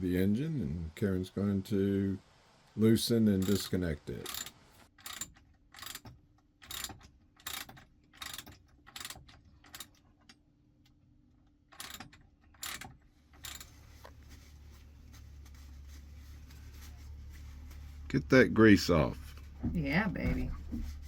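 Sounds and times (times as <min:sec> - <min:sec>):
steady low hum: 0:00.0 - 0:04.8
ratchet wrench clicking: 0:03.4 - 0:10.0, 0:11.7 - 0:13.8.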